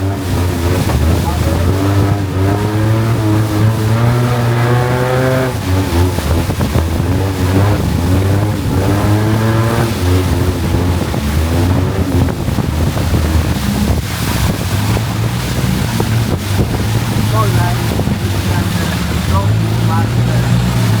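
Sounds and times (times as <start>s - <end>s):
boat engine revving: 0.0s - 21.0s.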